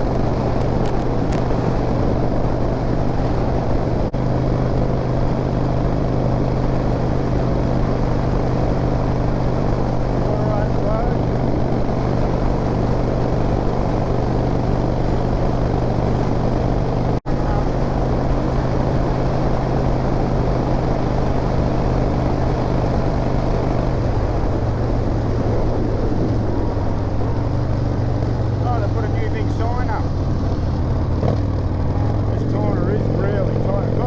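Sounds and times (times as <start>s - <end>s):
wind noise: 0.0s - 32.4s
motorcycle engine running: 0.0s - 34.0s.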